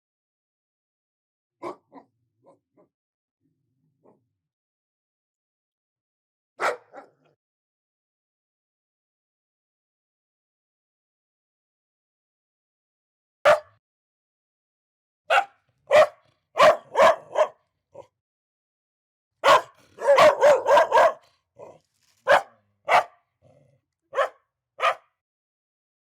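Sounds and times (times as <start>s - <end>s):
dog barking angrily: 1.6s - 2.6s, 6.6s - 7.3s, 13.5s - 13.7s, 15.3s - 18.1s, 19.4s - 25.1s.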